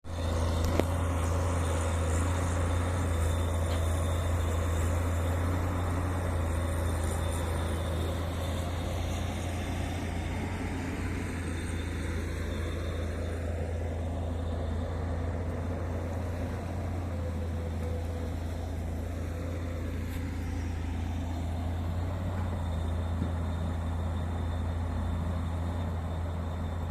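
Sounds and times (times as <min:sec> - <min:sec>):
excavator diesel engine droning: 0:00.0 - 0:26.9.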